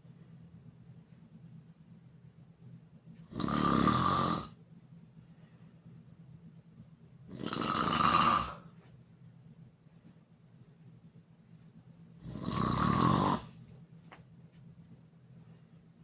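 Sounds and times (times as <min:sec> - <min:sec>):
person snoring: 0:03.3 - 0:04.6, 0:07.3 - 0:08.7, 0:12.2 - 0:13.5.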